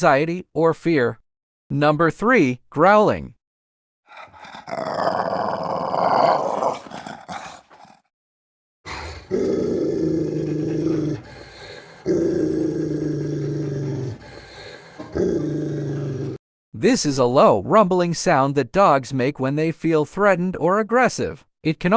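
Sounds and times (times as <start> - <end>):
dog growling: 4.1 - 8.1, 8.9 - 16.4.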